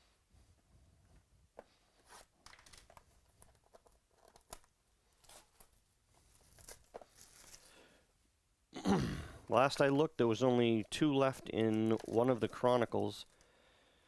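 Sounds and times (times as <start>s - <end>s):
card packaging rustling and crinkling: 1.9s - 7.8s, 10.3s - 13.5s.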